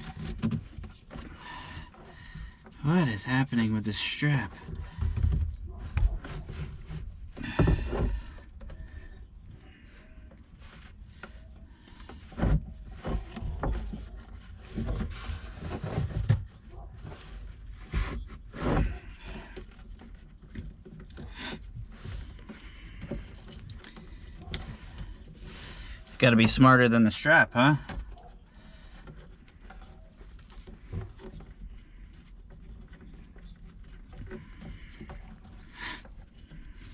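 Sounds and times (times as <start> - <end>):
hands working a strap buckle: 0.0 - 2.8.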